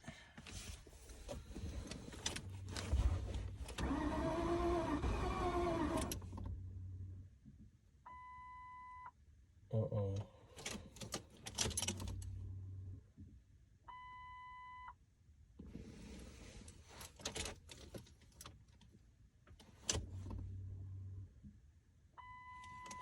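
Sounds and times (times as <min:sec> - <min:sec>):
car warning chime: 0:08.1 - 0:09.1, 0:13.9 - 0:14.9, 0:22.2 - 0:23.0.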